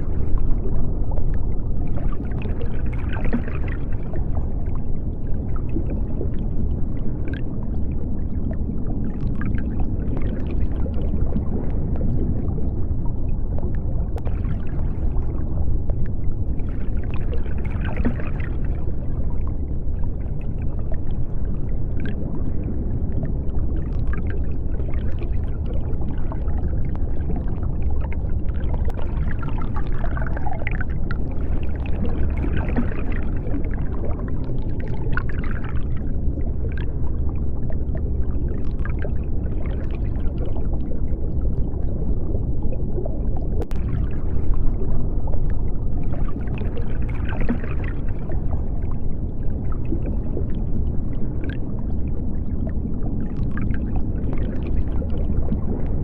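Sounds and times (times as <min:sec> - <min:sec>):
deep underwater rumble: 0:00.0 - 0:56.0
faint bubbling: 0:00.0 - 0:56.0
underwater clicking: 0:08.5 - 0:19.7, 0:20.9 - 0:37.0, 0:41.4 - 0:48.9.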